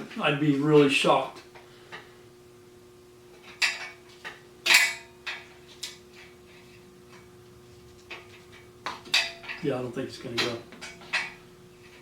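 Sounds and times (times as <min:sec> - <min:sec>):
tool clinking on metal: 0:09.0 - 0:11.4.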